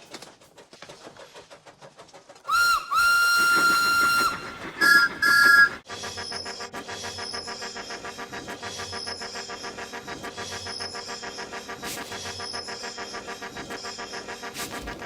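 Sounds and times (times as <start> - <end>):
steam locomotive chuffing: 0.0 - 15.0
steam whistle toots: 2.5 - 7.5.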